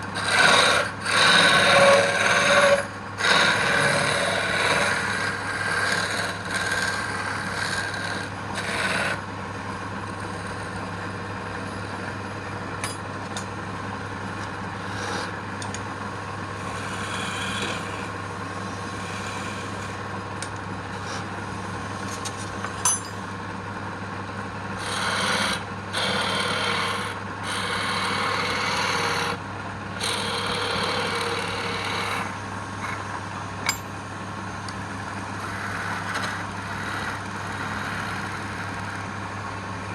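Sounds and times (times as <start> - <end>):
wood lathe humming: 0.0 - 22.1, 24.1 - 33.8, 34.4 - 39.9
tool scraping spinning wood: 0.0 - 22.8, 24.4 - 39.9.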